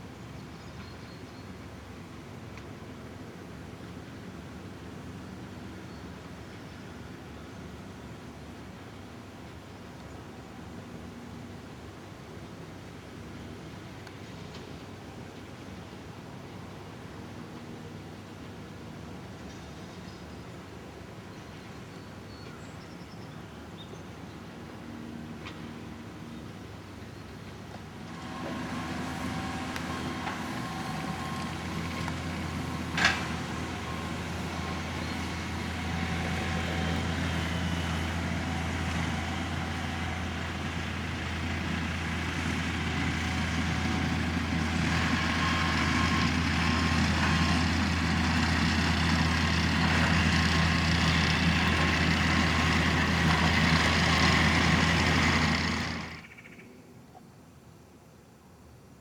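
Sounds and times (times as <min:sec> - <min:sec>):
heavy engine humming: 0:27.0 - 0:56.3.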